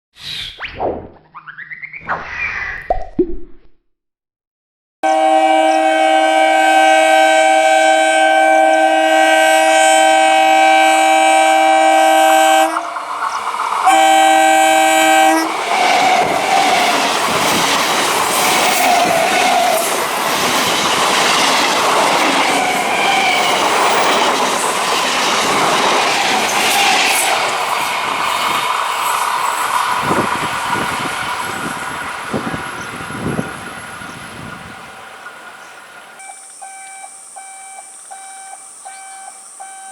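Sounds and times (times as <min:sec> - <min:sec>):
train horn blasts: 0:05.0 - 0:13.1, 0:13.8 - 0:17.0
train wheels rattling over rails: 0:11.8 - 0:35.5.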